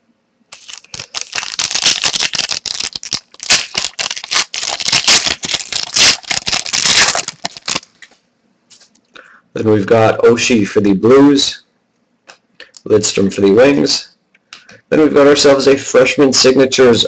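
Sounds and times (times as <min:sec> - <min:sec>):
cards being flipped and shuffled: 0:00.5 - 0:08.1.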